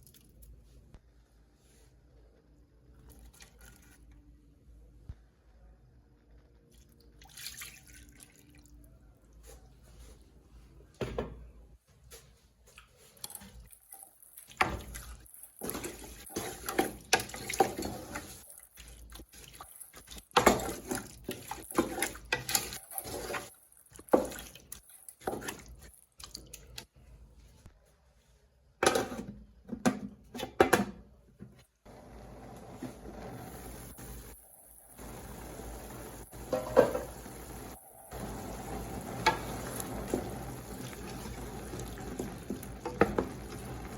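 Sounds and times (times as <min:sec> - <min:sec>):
water splashing and dripping: 0:06.7 - 0:08.7, 0:37.1 - 0:43.9.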